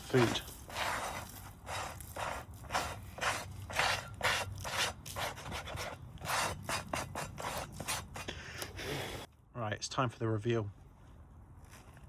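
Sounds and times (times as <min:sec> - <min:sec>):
coals scraped off metal lid: 0:00.0 - 0:09.3.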